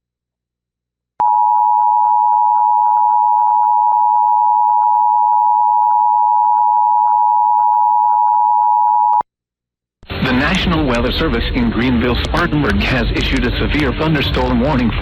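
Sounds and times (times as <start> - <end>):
two-tone electronic alert tone: 1.2 - 9.2.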